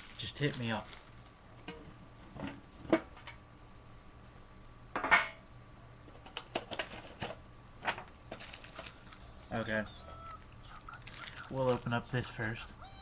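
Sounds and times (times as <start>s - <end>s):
faint electrical hum: 0.0s - 13.0s.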